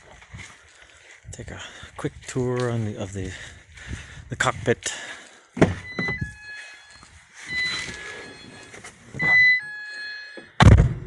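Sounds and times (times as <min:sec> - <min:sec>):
two-pitch dashboard warning chime: 0:05.8 - 0:10.6.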